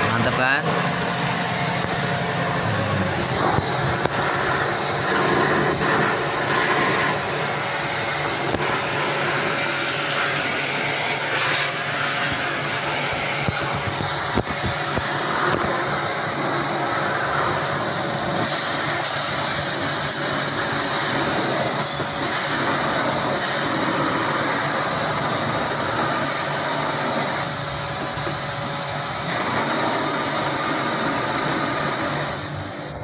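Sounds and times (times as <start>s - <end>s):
low motor hum: 0.0s - 18.4s
pressure washer spraying water: 0.0s - 33.0s.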